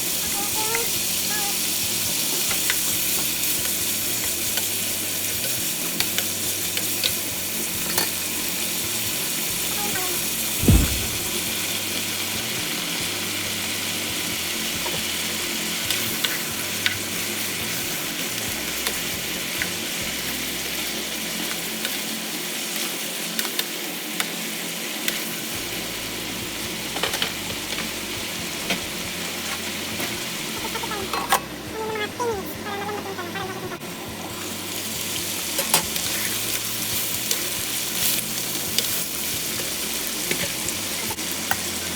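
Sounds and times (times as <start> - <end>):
food sizzling in a pan: 0.0 - 41.9.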